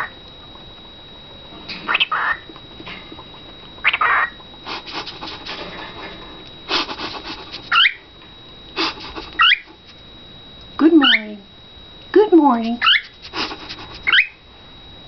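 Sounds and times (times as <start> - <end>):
cockatiel chattering and squawking: 1.9 - 2.4, 3.8 - 4.4, 7.0 - 8.0, 8.8 - 9.8, 12.8 - 14.4
cockatiel whistled glide: 12.8 - 14.4.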